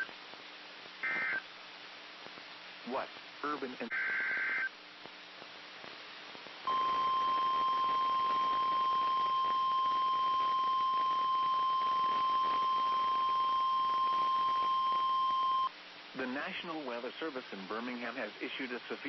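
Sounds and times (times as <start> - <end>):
loud steady alarm tone: 6.7 - 15.7.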